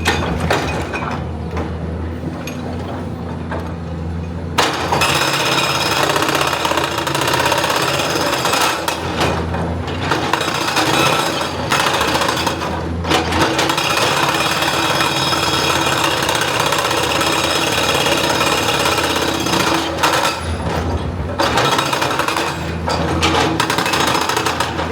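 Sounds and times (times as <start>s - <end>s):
excavator engine: 0.0s - 24.9s.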